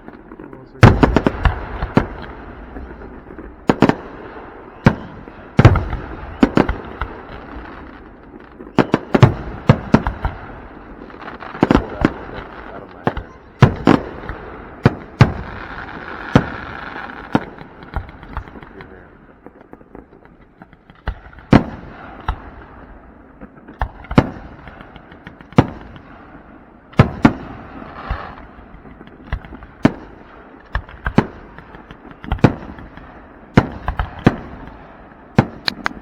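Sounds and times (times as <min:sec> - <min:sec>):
firework shells booming: 0:00.0 - 0:36.0
firework pops and crackle: 0:04.8 - 0:10.4, 0:13.0 - 0:22.6, 0:23.4 - 0:26.1, 0:27.0 - 0:34.8, 0:35.4 - 0:36.0.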